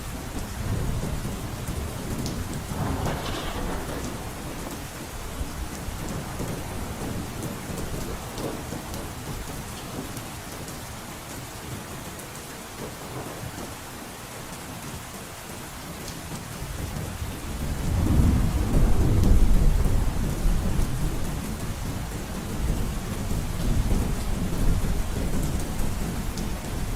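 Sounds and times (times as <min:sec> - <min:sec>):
heavy rain on a roof: 0:00.0 - 0:26.9
thunder rumbling: 0:00.5 - 0:08.5, 0:17.3 - 0:21.8.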